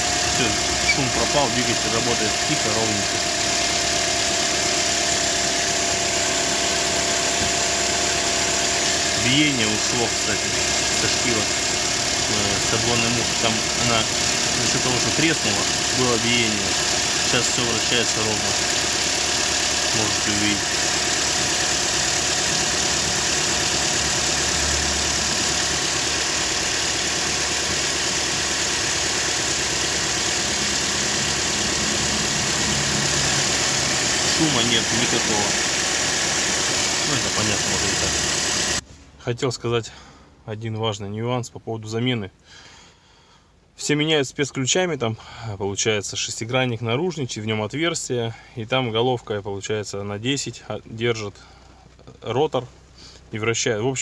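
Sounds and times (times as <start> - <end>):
car engine idling: 0.0 - 38.8.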